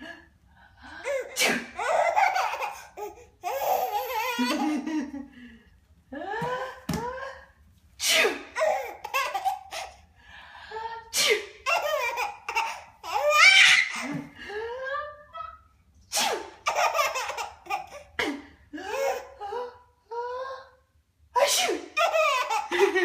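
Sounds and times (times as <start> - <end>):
baby laughing: 1.1 - 5.1, 8.6 - 10.0, 11.6 - 14.2, 16.6 - 18.2, 22.0 - 23.0
adult sneezing: 1.3 - 1.8, 8.0 - 8.6, 11.1 - 11.6, 16.1 - 16.6, 21.4 - 22.0.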